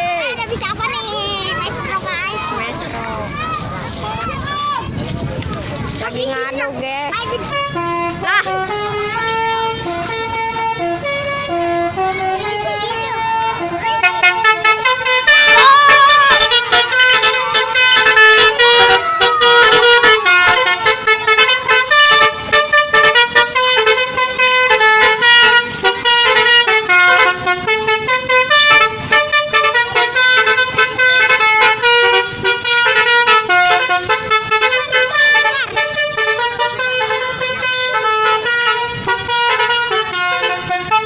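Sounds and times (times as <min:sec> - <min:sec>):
musical air horn: 0:07.3 - 0:41.0.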